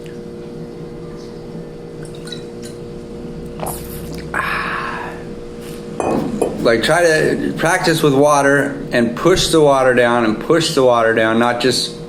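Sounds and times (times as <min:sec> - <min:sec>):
steady low hum: 0:00.0 - 0:12.0
person drinking and swallowing: 0:03.4 - 0:07.6.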